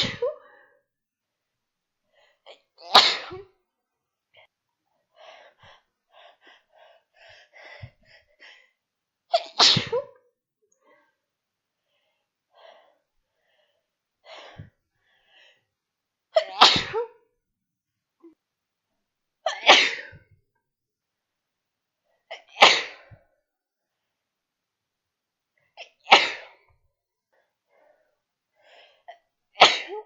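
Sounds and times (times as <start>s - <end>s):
woman sneezing: 0.0s - 0.5s, 2.8s - 3.5s, 9.4s - 10.2s, 16.4s - 17.2s, 29.6s - 30.0s
faint breaths: 11.8s - 15.8s.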